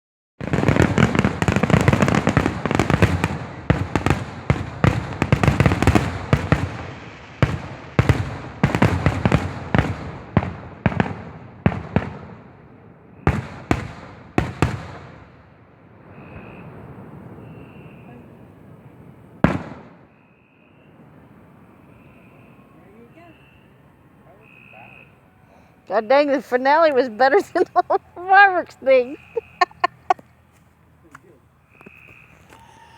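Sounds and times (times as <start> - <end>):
fireworks bangs and crackle: 0.4 - 23.1.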